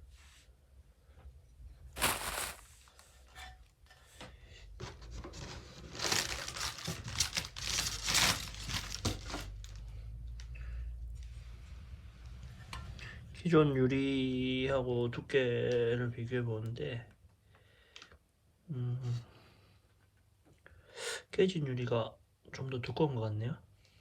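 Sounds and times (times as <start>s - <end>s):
packaging tearing and crinkling: 2.0s - 3.0s, 5.4s - 9.8s.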